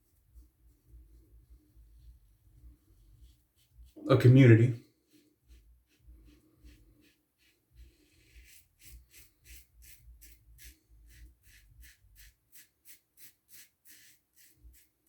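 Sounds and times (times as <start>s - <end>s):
razor scraping stubble: 5.1s - 15.0s.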